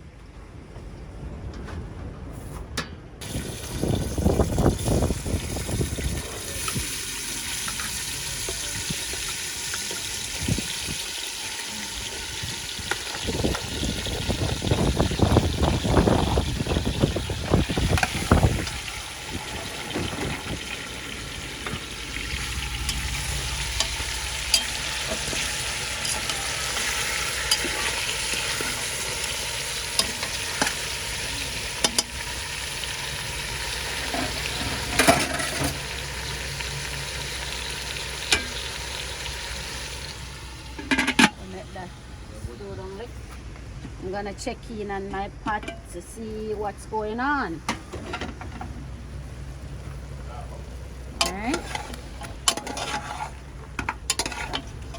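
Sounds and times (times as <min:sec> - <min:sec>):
beef sizzling in a pot: 0:03.2 - 0:41.6, 0:51.2 - 0:54.9
stirring clatter: 0:22.6 - 0:29.0, 0:51.2 - 0:54.9.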